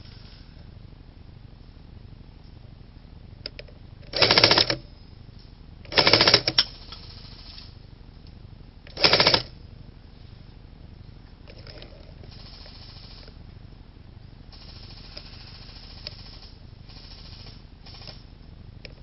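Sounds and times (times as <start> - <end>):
airsoft gun bursts: 4.1 - 4.8, 5.9 - 7.7, 8.9 - 9.5.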